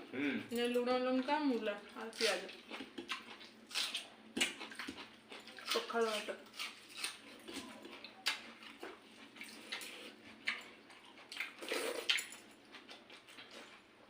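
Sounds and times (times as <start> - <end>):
wet slurp: 11.3 - 12.3.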